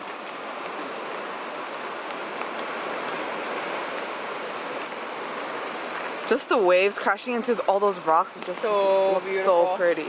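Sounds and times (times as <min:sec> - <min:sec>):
waves breaking on rocks: 0:00.0 - 0:10.0.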